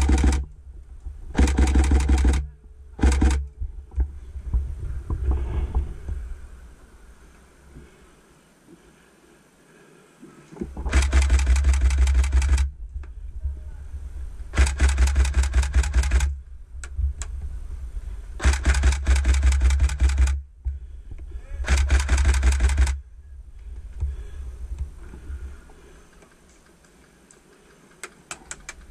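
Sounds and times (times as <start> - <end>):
airsoft rifle bursts: 0.0 - 0.4, 1.3 - 3.4, 10.9 - 12.7, 14.5 - 16.4, 18.4 - 20.4, 21.6 - 23.0.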